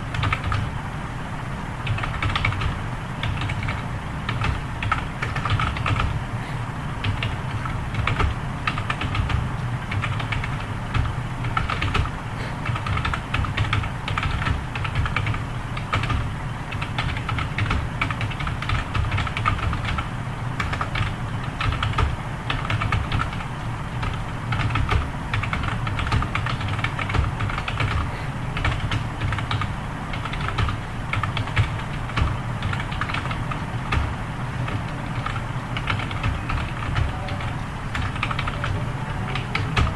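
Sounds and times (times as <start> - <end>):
faint low hum: 0.0 - 39.9
fast typing on keyboard: 0.1 - 0.7, 1.8 - 6.2, 7.0 - 39.9.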